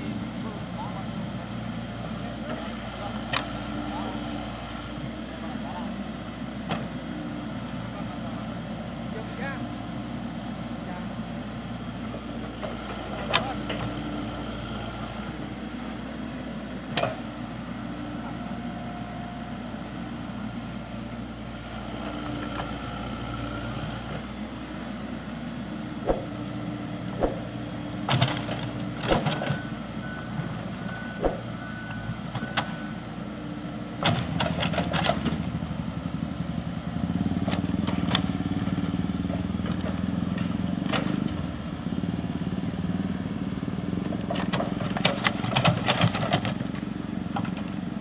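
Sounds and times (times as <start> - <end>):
excavator diesel engine running: 0.0 - 48.0
short beeps: 29.3 - 33.0.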